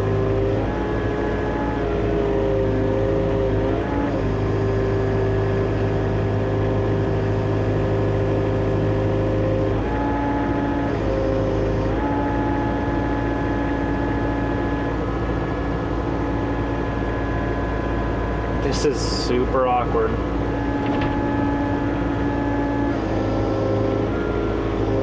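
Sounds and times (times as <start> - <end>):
excavator diesel engine running: 0.1 - 25.0
hydraulic hum: 14.8 - 25.0.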